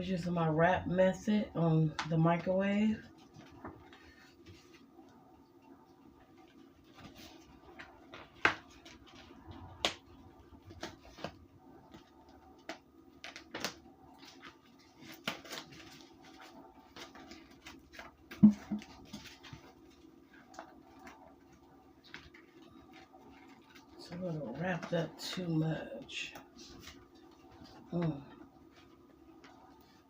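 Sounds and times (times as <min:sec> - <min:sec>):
wrapper crinkling: 0:10.6 - 0:25.4.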